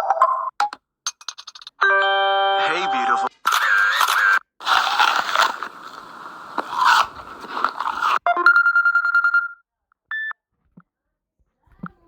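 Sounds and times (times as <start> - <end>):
crunchy rustling: 4.6 - 8.2.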